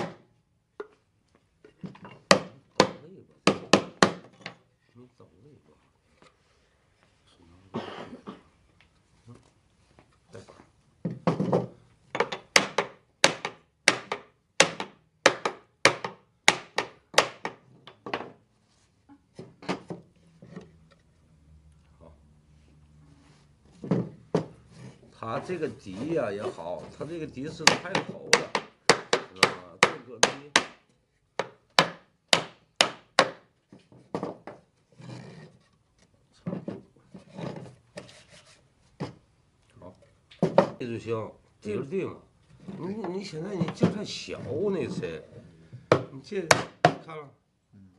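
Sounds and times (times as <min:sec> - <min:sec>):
sharp knocks on wood: 0:02.3 - 0:04.4, 0:11.0 - 0:18.4, 0:27.6 - 0:30.8, 0:31.4 - 0:34.6, 0:45.9 - 0:47.1.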